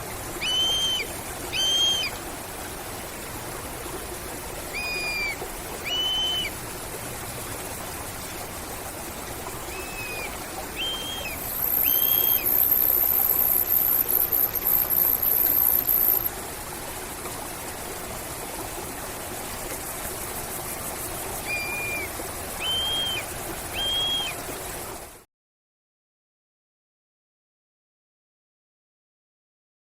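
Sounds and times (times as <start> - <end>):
steady hiss: 0.0 - 18.3
hawk whistled calls: 0.4 - 2.1, 4.7 - 6.5, 9.7 - 16.3, 21.4 - 24.4.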